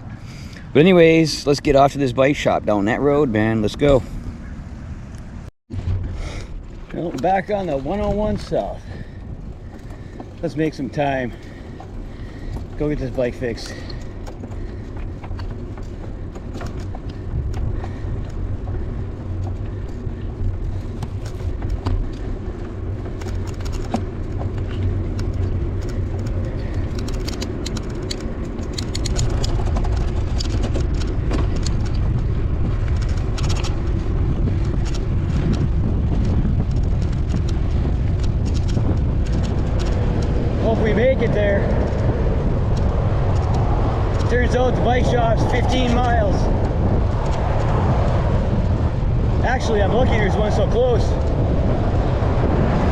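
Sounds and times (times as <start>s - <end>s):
road traffic passing: 0.0s - 52.9s
wind rumbling on microphone: 0.0s - 52.9s.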